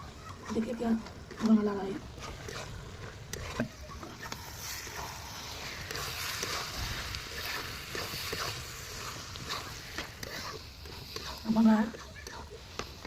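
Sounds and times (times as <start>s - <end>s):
meat sizzling in a pan: 0.0s - 13.0s.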